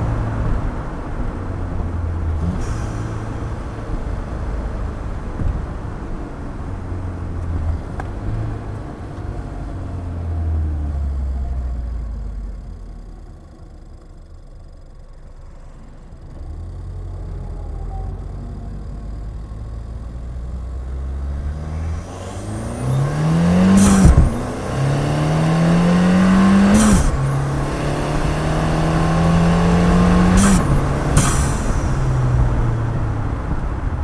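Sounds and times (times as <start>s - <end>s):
car engine accelerating: 0.0s - 34.0s
turbo whistle rising: 21.5s - 32.9s
hiss at gear shift: 21.5s - 33.3s.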